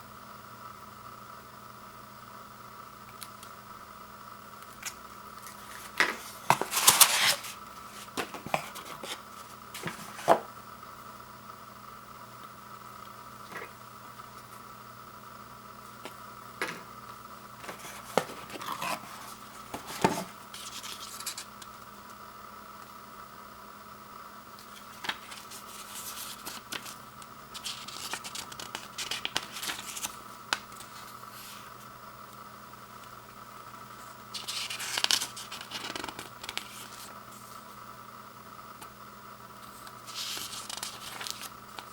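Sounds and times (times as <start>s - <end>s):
faint steady hum: 0.0s - 41.9s
rustling cardboard and plastic wrap: 5.6s - 10.4s.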